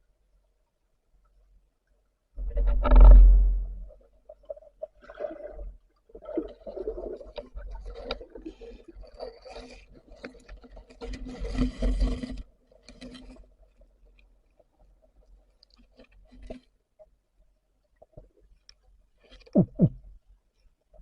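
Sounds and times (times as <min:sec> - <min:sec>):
underwater bubbling: 0:02.4 - 0:13.8.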